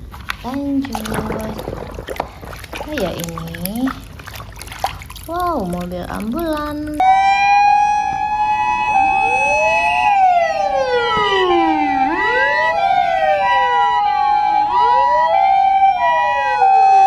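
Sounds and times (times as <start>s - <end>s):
two-tone ambulance siren: 7.0s - 17.0s
wailing sirens: 7.0s - 17.0s.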